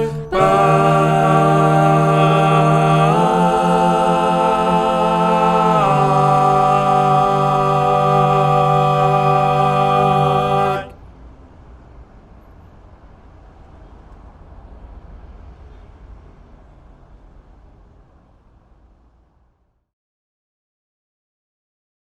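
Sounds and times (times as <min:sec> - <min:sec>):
voices holding a chord: 0:00.0 - 0:11.0
faint low background noise: 0:00.0 - 0:19.9.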